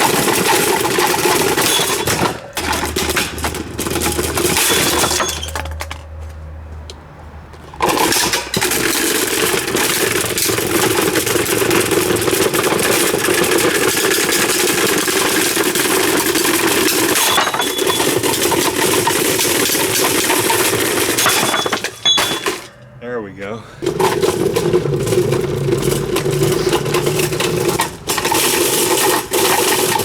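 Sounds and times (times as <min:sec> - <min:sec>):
electric fan rattling: 0:00.0 - 0:06.2, 0:07.5 - 0:22.9, 0:23.8 - 0:30.0.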